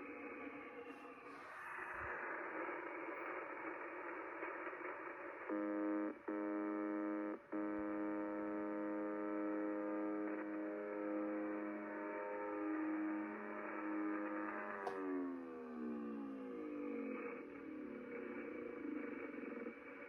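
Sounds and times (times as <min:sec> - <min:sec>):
radio hiss: 0:00.3 - 0:14.8.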